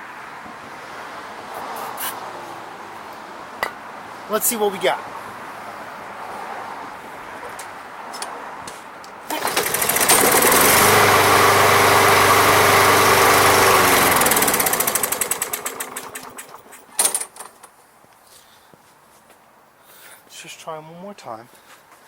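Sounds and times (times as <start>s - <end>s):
lawn mower engine running: 9.3s - 17.6s.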